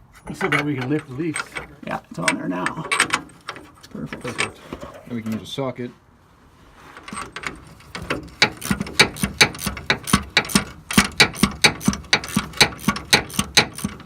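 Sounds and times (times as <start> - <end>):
ratchet wrench clicking: 8.4 - 14.0.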